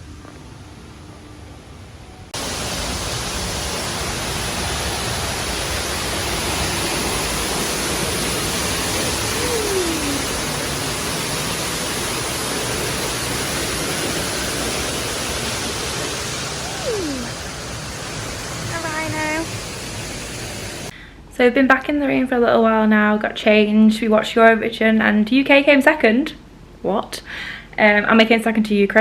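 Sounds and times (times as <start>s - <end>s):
loud rushing noise: 2.3s - 20.9s
faint short falling tone: 16.5s - 17.7s.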